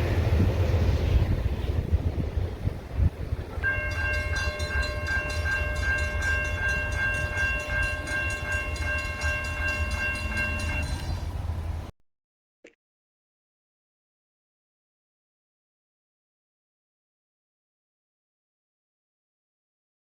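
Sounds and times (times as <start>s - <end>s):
passing train rumble: 0.0s - 11.9s
crossing bell ringing rapidly: 3.6s - 11.3s.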